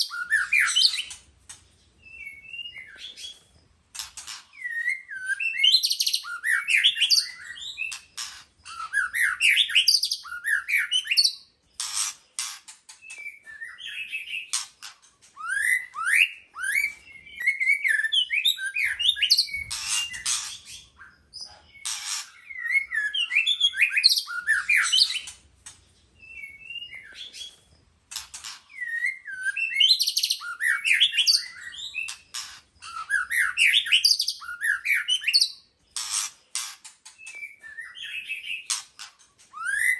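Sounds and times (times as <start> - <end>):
bird singing whistled phrases: 0.0 - 1.2, 2.1 - 3.4, 4.6 - 8.0, 8.7 - 11.4, 13.1 - 14.6, 15.4 - 20.9, 22.4 - 25.3, 26.2 - 27.5, 28.7 - 32.2, 32.8 - 35.7, 37.2 - 38.7, 39.5 - 39.9
sharp bird clicks: 35.9 - 37.5.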